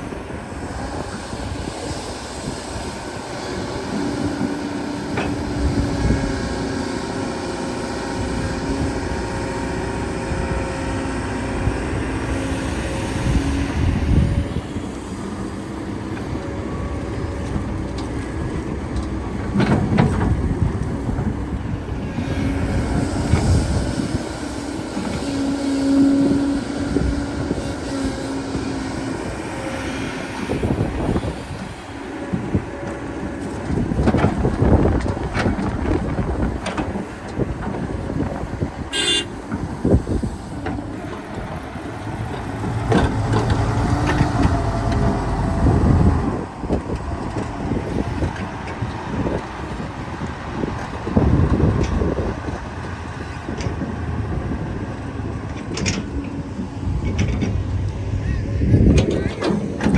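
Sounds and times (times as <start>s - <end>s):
excavator diesel engine whining: 0.0s - 59.9s.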